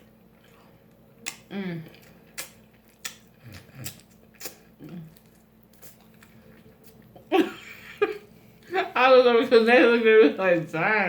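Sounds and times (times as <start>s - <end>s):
lip smacks and chewing clicks: 0.4s - 7.0s
person humming mm: 1.5s - 2.0s.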